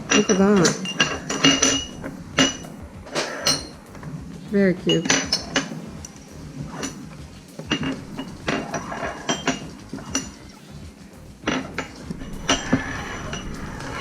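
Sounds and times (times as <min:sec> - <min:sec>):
toy dishes clinking: 0:00.0 - 0:03.9, 0:06.8 - 0:14.0.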